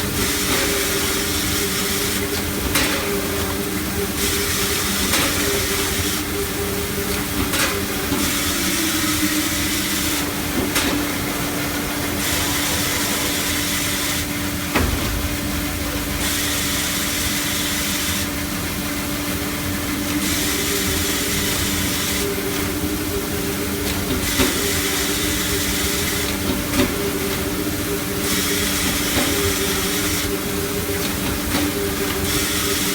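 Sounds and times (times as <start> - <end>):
band saw motor hum: 5.8 - 18.9.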